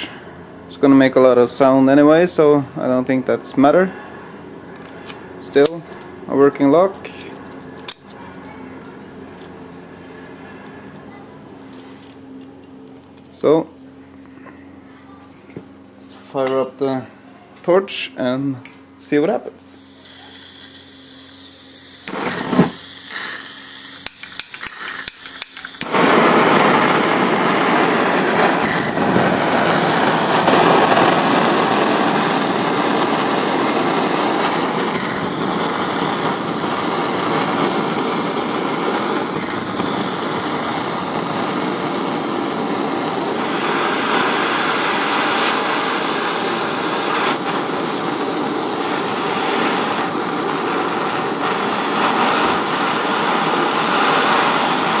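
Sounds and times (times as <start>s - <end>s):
blowtorch flame hissing: 0.0s - 8.8s, 19.6s - 55.0s
blowtorch igniter clicks: 4.8s - 6.1s, 19.8s - 55.0s.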